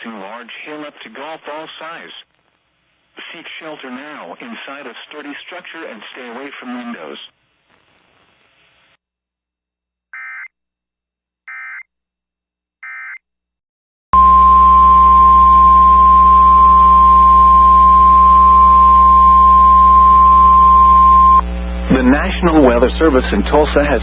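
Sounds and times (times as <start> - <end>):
steady warning alarm tone: 14.2 - 21.6
low hum: 14.2 - 24.0.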